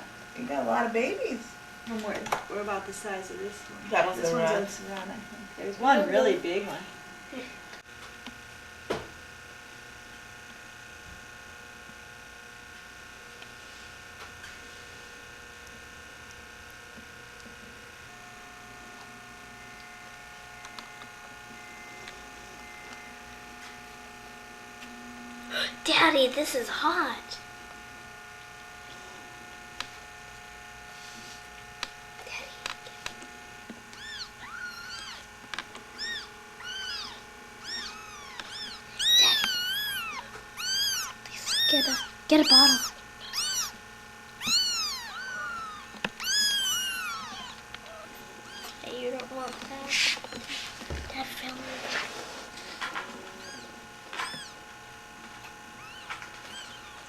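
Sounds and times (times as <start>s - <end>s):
electrical hum: 0.0s - 57.0s
kittens mewing: 33.9s - 35.3s, 35.9s - 49.3s, 51.5s - 57.0s.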